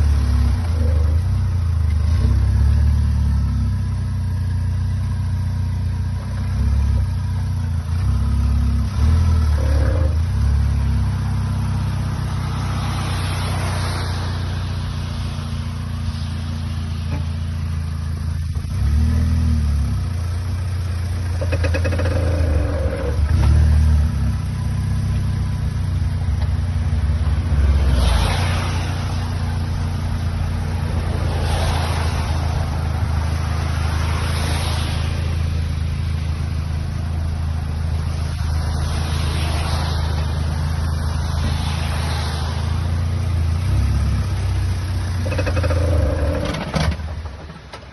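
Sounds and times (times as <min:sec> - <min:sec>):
car engine running: 0:00.0 - 0:47.9
knocking from front wheels: 0:21.2 - 0:23.7, 0:44.9 - 0:47.9.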